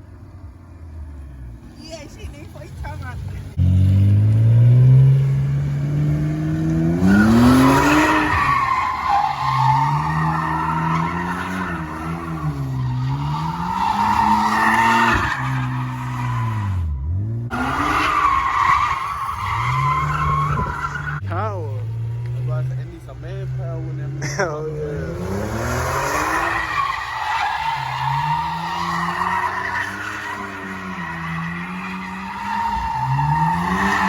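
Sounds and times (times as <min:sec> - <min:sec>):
car engine revving: 0:00.1 - 0:34.0
tyres squealing: 0:07.0 - 0:16.7.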